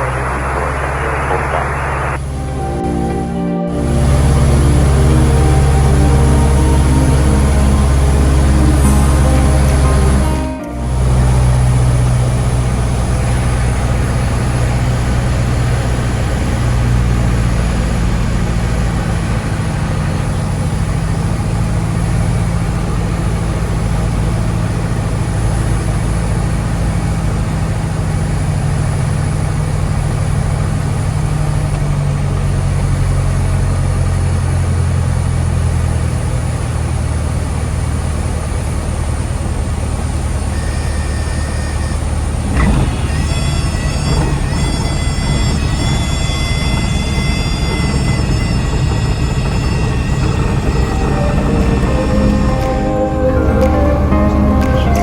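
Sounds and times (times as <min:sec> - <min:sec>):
propeller plane engine droning: 0:00.0 - 0:55.0.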